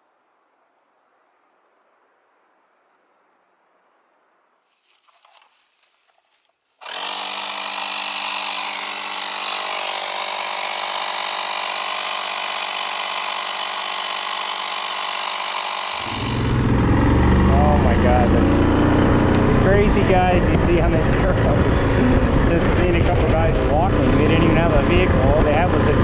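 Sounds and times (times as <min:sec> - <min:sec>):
faint rustling: 0:04.6 - 0:06.8
atv engine running: 0:15.9 - 0:26.0.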